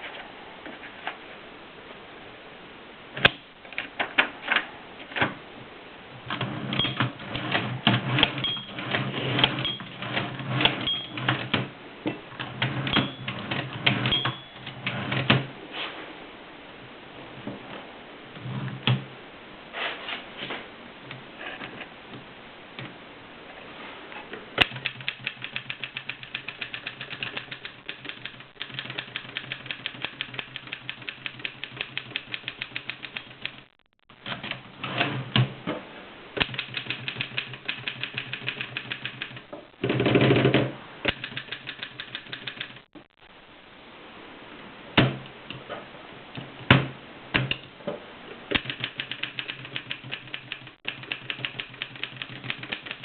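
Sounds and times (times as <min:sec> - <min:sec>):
typewriter keystrokes: 0:24.6 - 0:33.6, 0:36.4 - 0:39.5, 0:41.1 - 0:42.9, 0:48.5 - 0:53.0
typewriter mechanical rattle: 0:24.6 - 0:33.7, 0:36.4 - 0:40.5, 0:41.1 - 0:42.9, 0:48.5 - 0:53.0.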